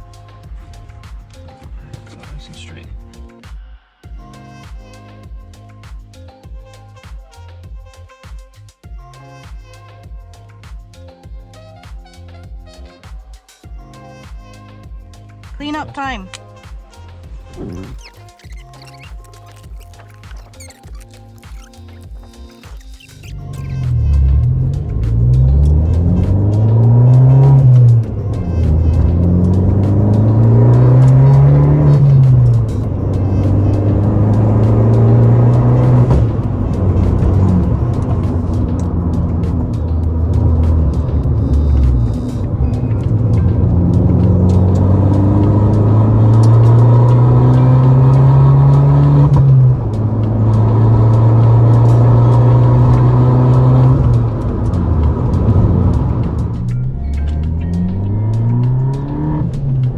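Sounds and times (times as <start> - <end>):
background music: 0.0 - 59.9
car engine revving through gears: 23.5 - 59.9.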